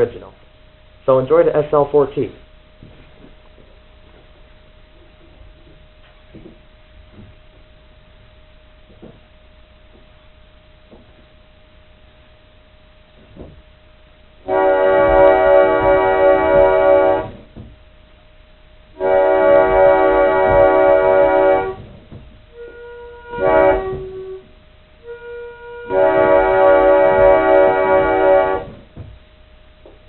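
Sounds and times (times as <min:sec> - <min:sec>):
pump organ chord blasts: 0:09.5 - 0:29.8.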